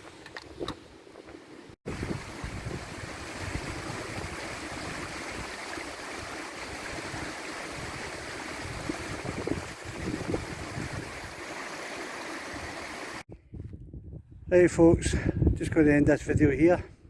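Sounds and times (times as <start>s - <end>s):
wind buffeting microphone: 0.0s - 11.5s, 13.3s - 17.0s
mountain stream rushing: 1.9s - 13.2s.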